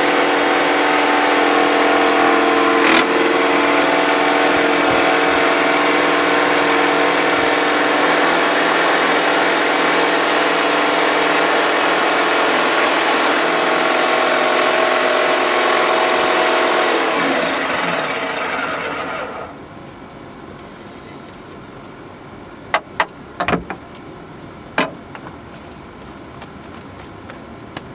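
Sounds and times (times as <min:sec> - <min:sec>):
jigsaw running: 0:00.0 - 0:19.5.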